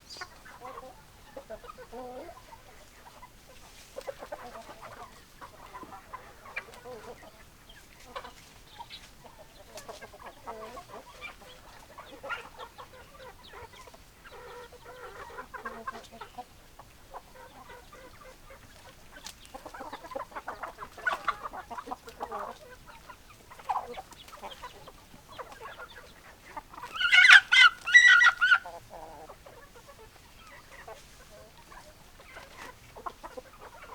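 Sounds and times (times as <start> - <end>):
chickens clucking: 0.0 - 33.9
loud high chicken call: 27.0 - 28.6.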